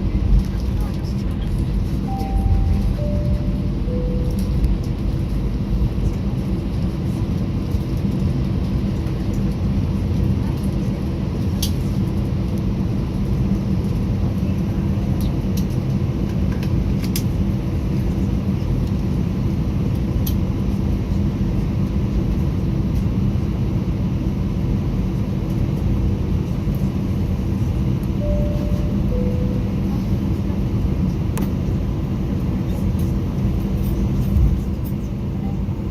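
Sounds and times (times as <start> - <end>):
jet cabin rumble: 0.0 - 35.9
two-tone cabin chime: 2.0 - 4.8, 28.2 - 30.0.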